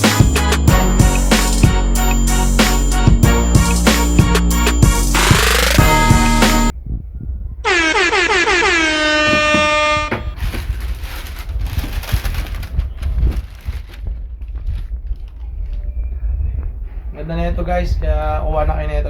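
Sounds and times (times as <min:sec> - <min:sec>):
horn blast: 0:00.0 - 0:06.7, 0:07.6 - 0:10.4.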